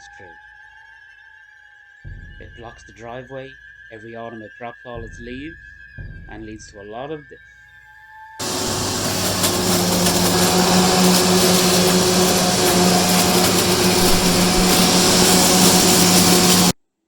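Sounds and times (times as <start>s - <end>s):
leaf blower running: 8.4s - 16.7s.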